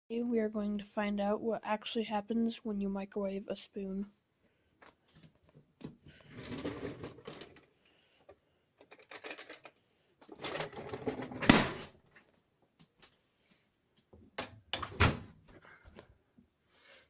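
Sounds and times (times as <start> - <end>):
objects rattling and clattering: 5.2 - 7.7, 8.8 - 12.3.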